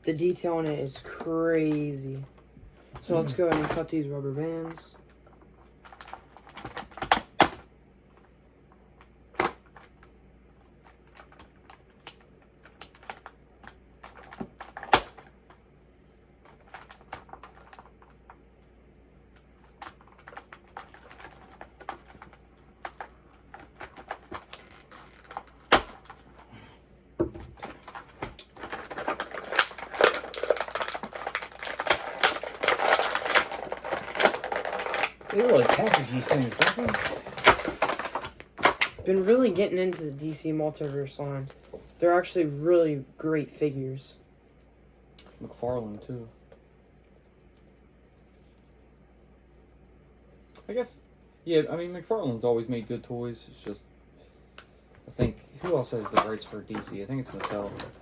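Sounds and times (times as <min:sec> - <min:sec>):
plastic rustling and clattering: 0:03.0 - 0:08.3, 0:09.3 - 0:15.6, 0:16.4 - 0:18.4, 0:19.5 - 0:26.6, 0:27.2 - 0:41.9, 0:55.0 - 0:58.0.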